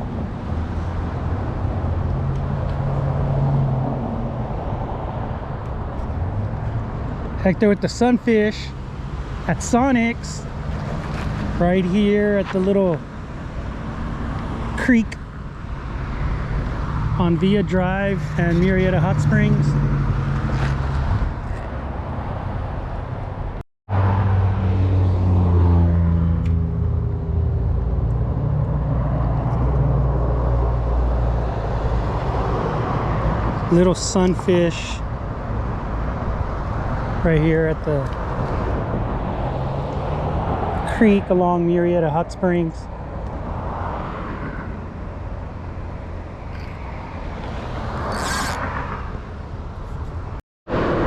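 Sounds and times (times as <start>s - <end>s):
road traffic: 0.0s - 51.0s
vehicle engine passing by: 16.0s - 22.7s, 23.9s - 33.8s, 36.7s - 41.3s.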